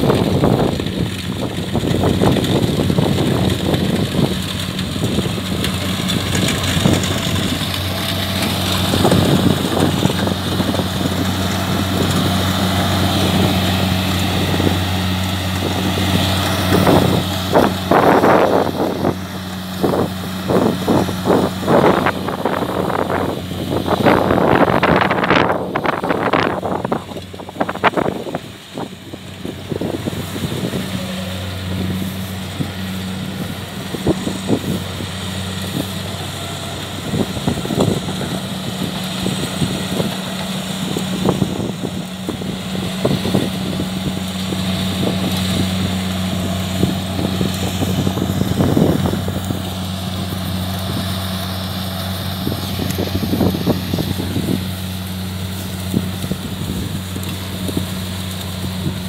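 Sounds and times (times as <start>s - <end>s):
diesel engine humming: 0.0s - 59.0s
wind buffeting microphone: 0.0s - 59.0s.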